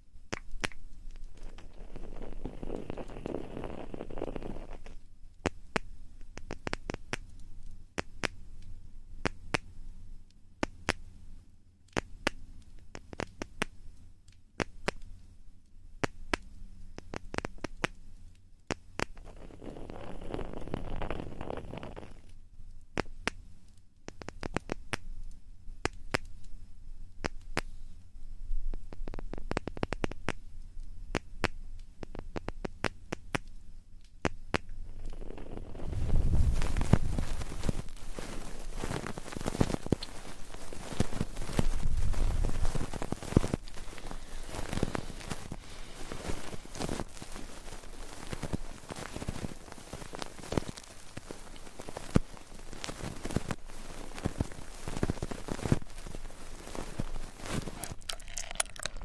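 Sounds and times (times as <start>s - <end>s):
crackling clicks and scratches: 0.3s - 11.2s, 11.8s - 59.0s
soft rubbing: 35.0s - 59.0s.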